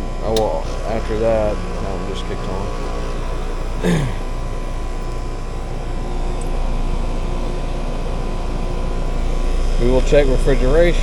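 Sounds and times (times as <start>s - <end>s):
compressor humming: 0.0s - 11.0s
fan whirring: 0.0s - 11.0s.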